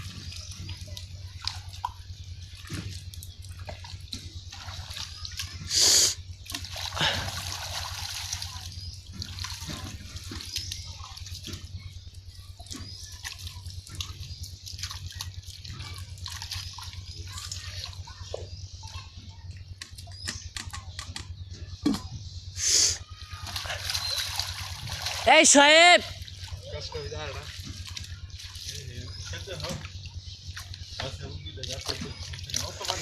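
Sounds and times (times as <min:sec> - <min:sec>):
water splashing and trickling: 0:00.0 - 0:20.2, 0:23.0 - 0:33.0
steady low hum: 0:00.0 - 0:33.0.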